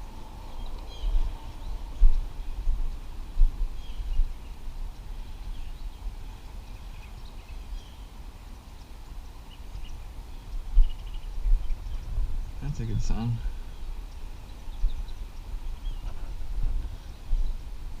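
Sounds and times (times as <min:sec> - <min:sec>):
wind buffeting microphone: 0:00.0 - 0:07.8, 0:09.1 - 0:18.0
faint bird chirps: 0:08.8 - 0:17.7.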